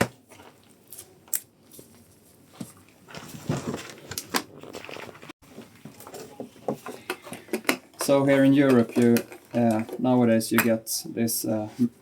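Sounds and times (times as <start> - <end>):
handling noise: 1.7 - 10.8
irregular clattering and rustling: 1.8 - 10.8.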